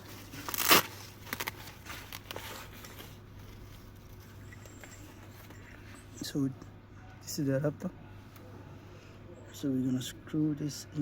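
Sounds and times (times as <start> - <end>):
rustle of plastic accessories: 0.0 - 6.0
faint steady hum: 0.0 - 11.0.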